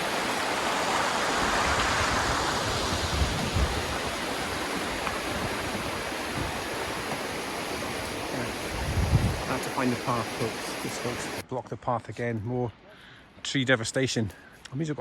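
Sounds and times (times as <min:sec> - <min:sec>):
fast-flowing stream rushing: 0:00.0 - 0:11.4.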